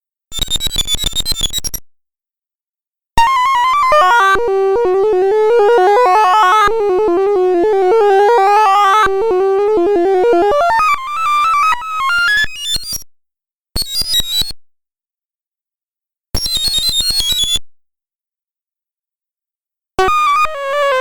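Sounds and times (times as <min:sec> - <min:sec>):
rapid synthesized beeps: 0:04.5 - 0:10.8.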